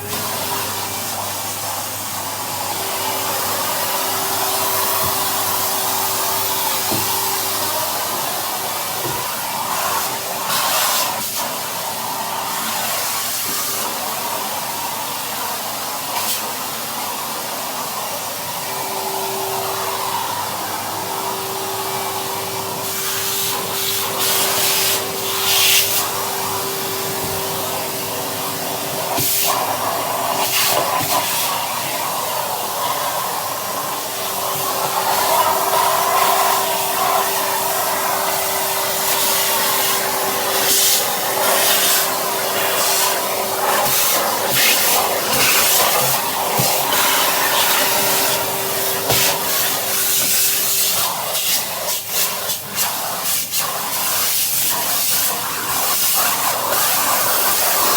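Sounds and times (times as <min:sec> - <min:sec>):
vacuum cleaner motor hum: 0:00.0 - 0:57.9
vacuum nozzle air hiss: 0:22.7 - 0:31.9, 0:33.8 - 0:57.9.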